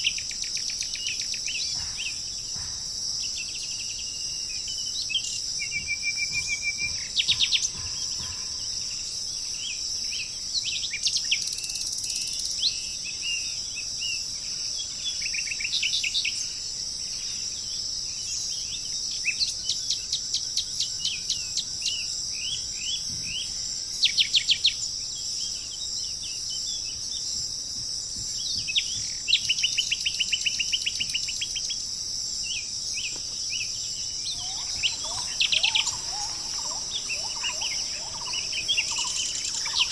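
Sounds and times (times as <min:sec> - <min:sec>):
birds chirping and calling: 0:00.0 - 0:12.9, 0:28.2 - 0:31.8, 0:32.5 - 0:39.9
high-pitched insect drone: 0:00.0 - 0:39.9
rapid bird trills: 0:33.5 - 0:39.9.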